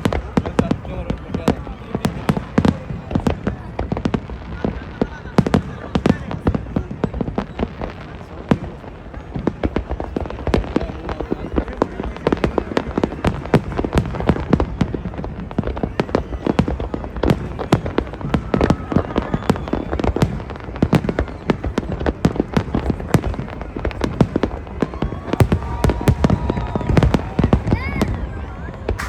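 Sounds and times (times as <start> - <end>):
fireworks bangs and crackles: 0.0 - 29.0.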